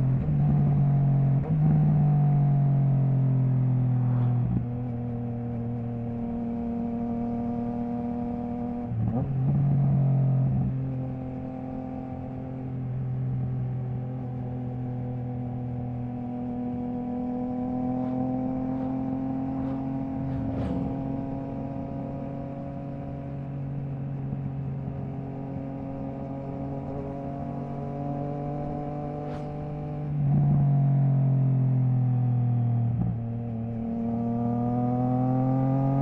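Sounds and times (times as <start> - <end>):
motorcycle engine running: 13.8 - 25.2.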